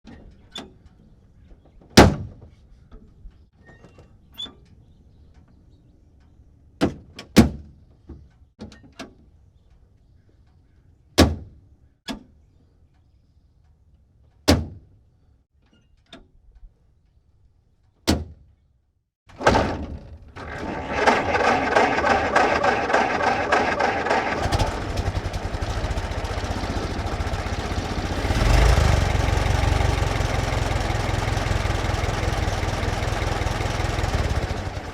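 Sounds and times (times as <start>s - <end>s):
engine crank-started and idling: 19.3s - 34.9s.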